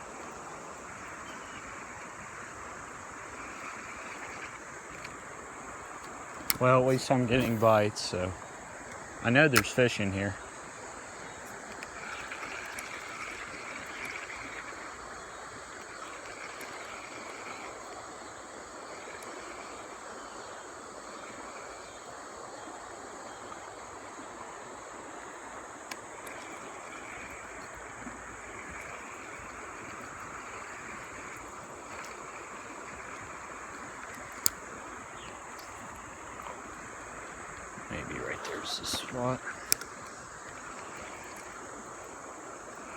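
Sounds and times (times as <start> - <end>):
river water flowing: 0.0 - 42.9
sharp click: 6.4 - 7.9, 38.4 - 40.1.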